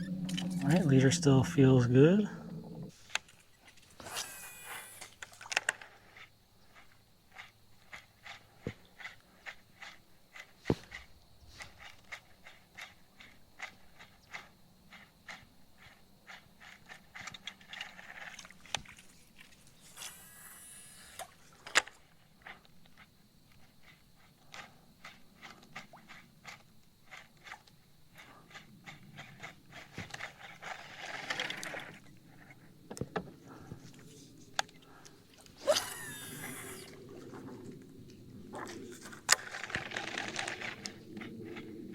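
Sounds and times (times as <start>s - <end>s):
short hissing bursts: 4.0s - 5.2s, 19.8s - 21.3s, 35.6s - 37.0s.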